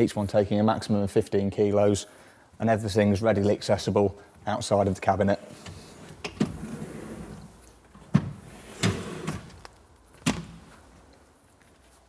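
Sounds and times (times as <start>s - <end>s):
drawer runners sliding rumble: 5.5s - 10.9s.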